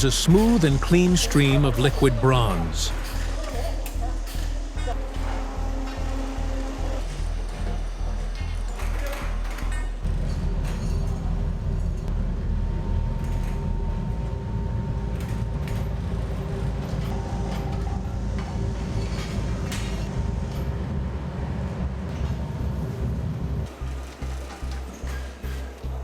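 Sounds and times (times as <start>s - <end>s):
faint machine whine: 10.0s - 26.0s.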